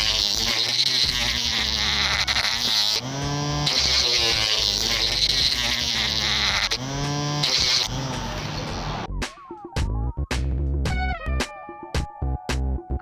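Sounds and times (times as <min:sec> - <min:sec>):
mini grinder buzzing whine: 0:00.0 - 0:09.1.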